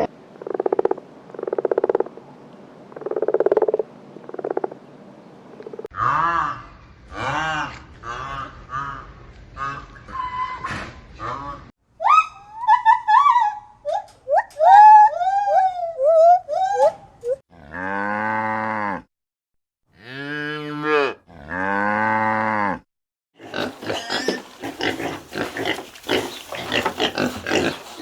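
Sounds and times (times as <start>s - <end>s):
pig grunting and snuffling: 23.4s - 28.0s.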